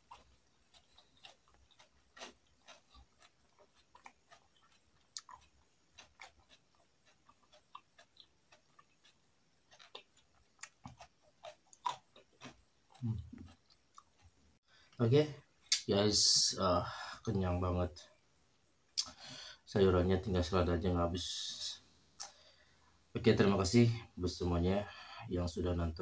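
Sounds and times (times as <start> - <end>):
person chewing food: 0.0 - 15.0
low voice sound: 13.0 - 13.4.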